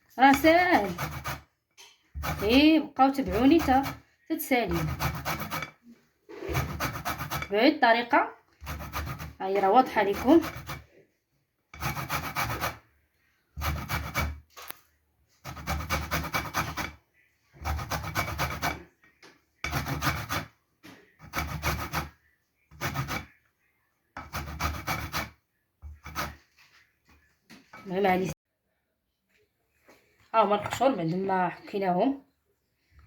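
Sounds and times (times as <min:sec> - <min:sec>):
peel rasping on metal grater: 0:00.4 - 0:01.4, 0:02.2 - 0:04.0, 0:04.7 - 0:05.8, 0:06.5 - 0:07.5, 0:08.6 - 0:10.8, 0:11.8 - 0:12.8, 0:13.6 - 0:14.4, 0:15.4 - 0:17.0, 0:17.6 - 0:18.8, 0:19.6 - 0:20.5, 0:21.2 - 0:23.3, 0:24.2 - 0:25.3.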